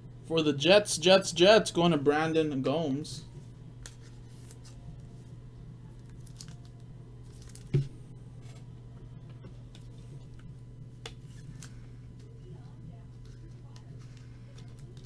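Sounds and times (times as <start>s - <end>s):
steady low hum: 0.0s - 15.0s
trading cards rustling and clicking: 3.8s - 5.2s, 6.0s - 7.8s, 9.7s - 12.4s, 13.1s - 15.0s.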